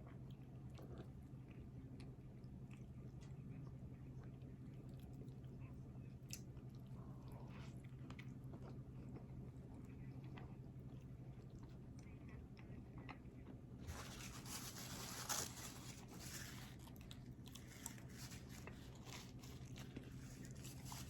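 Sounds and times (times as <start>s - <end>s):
close-miked chewing and crunching: 0.0s - 21.0s
low steady hum: 0.0s - 21.0s.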